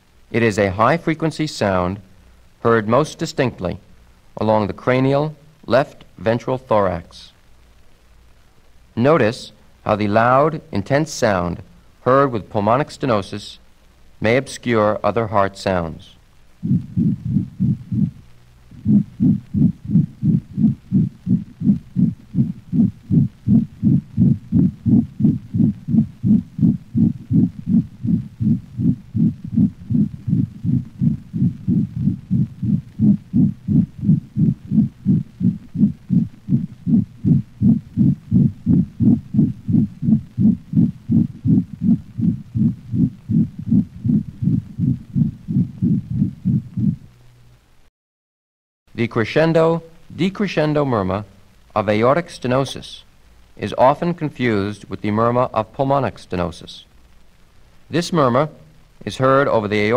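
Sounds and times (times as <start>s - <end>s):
heart murmur: 16.6s - 47.1s.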